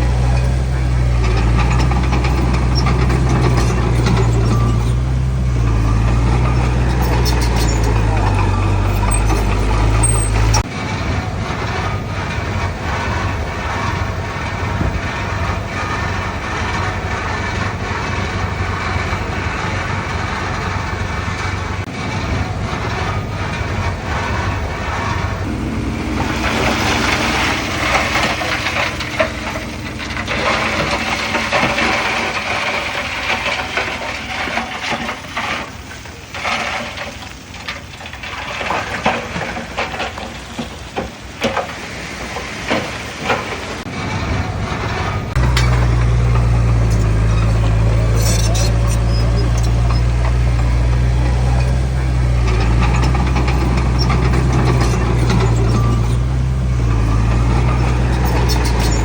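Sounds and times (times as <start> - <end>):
low engine drone: 0.0 - 34.0, 42.6 - 59.0
diesel machinery engine: 0.0 - 59.0
metal clanks and knocks: 0.0 - 59.0
scraping rushing noise: 21.8 - 35.7.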